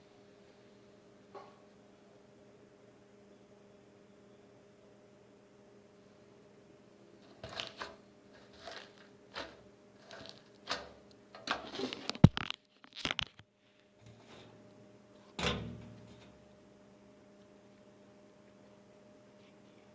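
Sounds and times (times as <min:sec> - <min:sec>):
crackly slime squishes: 0:07.3 - 0:13.4.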